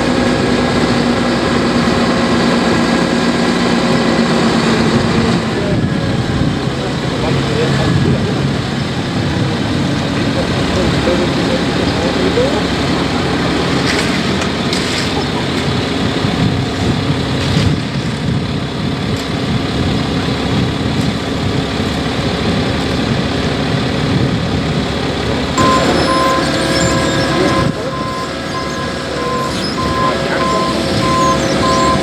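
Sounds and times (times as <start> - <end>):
diesel paving machinery running: 0.0 - 32.0
reversing alarm beeping: 25.6 - 32.0.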